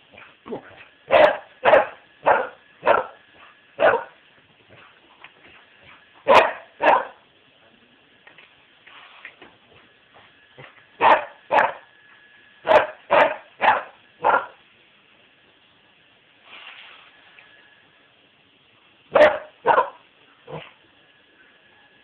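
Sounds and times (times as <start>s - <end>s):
dog barking: 1.1s - 3.2s, 3.8s - 4.2s, 6.3s - 7.2s, 10.6s - 11.9s, 12.6s - 14.6s, 19.1s - 20.7s.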